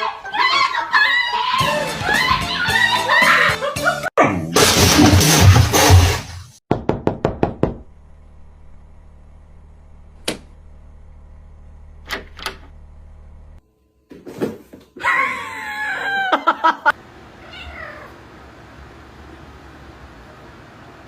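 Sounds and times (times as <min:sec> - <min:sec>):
cat meowing: 0:17.4 - 0:18.2.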